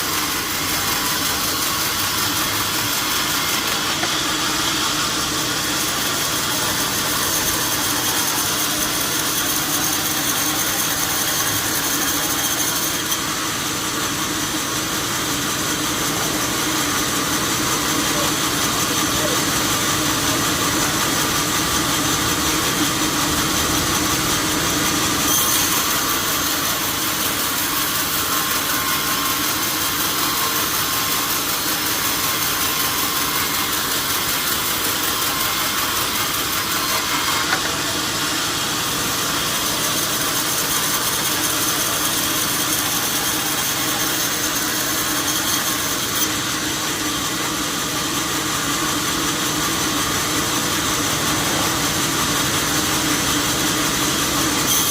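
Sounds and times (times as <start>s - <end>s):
sawmill saw running: 0.0s - 54.9s.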